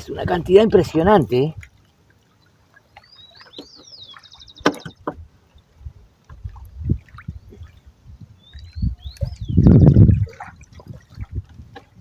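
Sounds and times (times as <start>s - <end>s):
water sloshing and splashing: 0.0s - 12.0s
small birds chirping: 3.0s - 5.0s, 8.4s - 10.0s.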